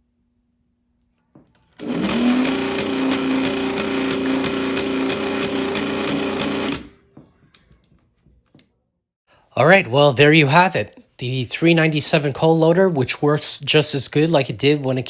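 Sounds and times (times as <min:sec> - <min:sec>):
small electric motor humming: 0:01.8 - 0:06.9.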